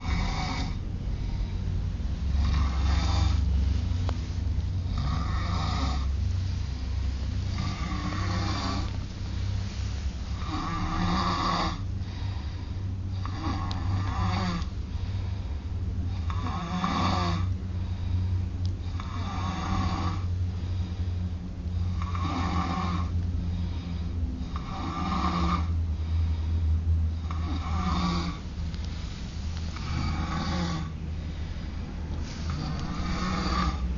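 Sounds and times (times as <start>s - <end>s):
pet snoring: 0.0s - 1.6s, 2.2s - 14.7s, 16.1s - 17.6s, 18.8s - 20.3s, 21.8s - 23.8s, 24.4s - 25.8s, 27.1s - 28.6s, 29.6s - 31.0s, 32.2s - 33.9s
low hum: 0.0s - 33.9s.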